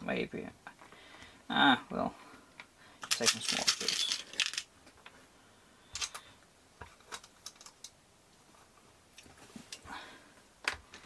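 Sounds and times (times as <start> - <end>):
small screws and parts clicking: 3.0 - 4.7.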